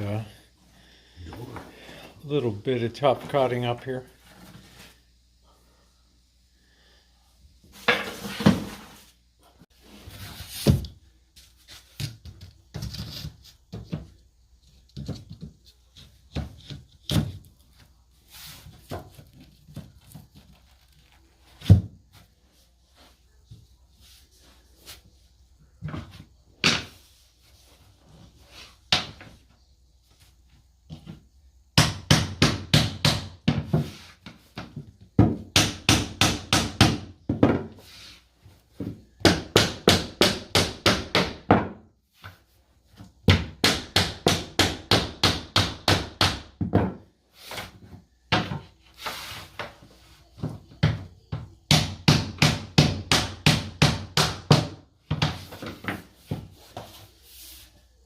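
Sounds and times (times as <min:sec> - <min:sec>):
hammer tapping flooring planks: 0:50.4 - 0:57.0.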